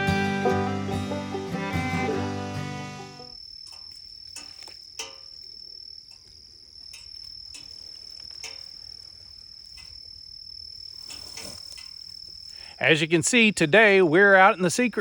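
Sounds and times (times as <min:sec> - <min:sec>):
guitar and banjo music: 0:00.0 - 0:03.3
high-pitched insect trill: 0:03.2 - 0:15.0.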